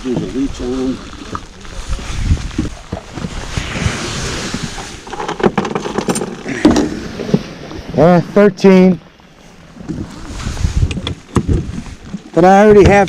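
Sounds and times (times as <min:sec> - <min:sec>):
water around a boat: 0:00.0 - 0:13.0
wind: 0:00.0 - 0:13.0
knocks and clicks handling fish: 0:05.0 - 0:07.5, 0:10.8 - 0:13.0.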